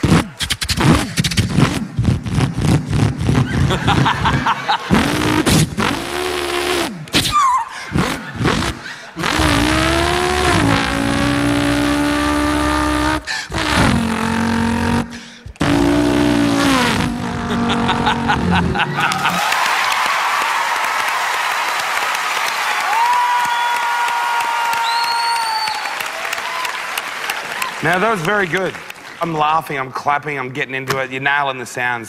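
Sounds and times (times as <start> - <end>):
man imitating car engine: 1.0 - 19.4.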